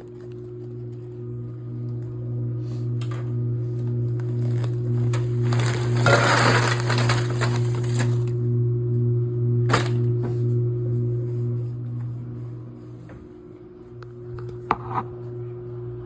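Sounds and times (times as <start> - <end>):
electrical hum: 0.0 - 16.0
rustling crunching noise: 4.2 - 8.3.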